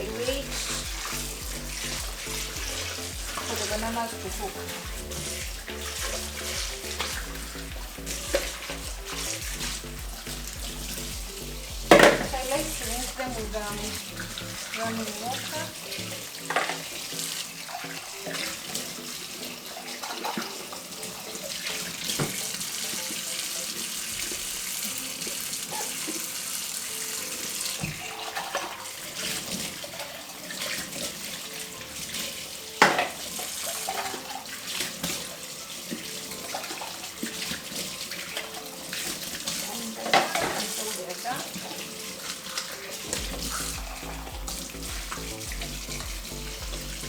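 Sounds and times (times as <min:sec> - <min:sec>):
tap water running into sink: 0:00.0 - 0:47.0
bottles knocking: 0:00.2 - 0:13.7.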